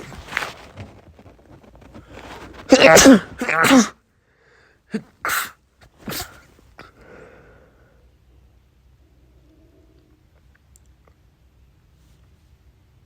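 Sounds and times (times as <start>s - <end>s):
person sneezing: 2.3s - 4.0s, 4.9s - 7.0s
faint breathing: 4.1s - 4.9s, 6.2s - 8.3s.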